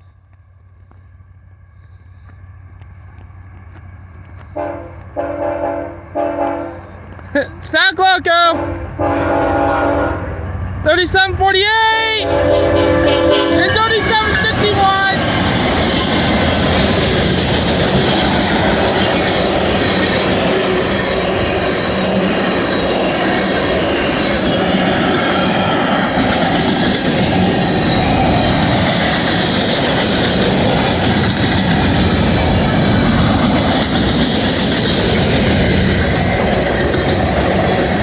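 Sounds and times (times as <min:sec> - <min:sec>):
freight train rumbling past: 0:00.0 - 0:38.0
wheels clattering over rail joints: 0:12.7 - 0:38.0.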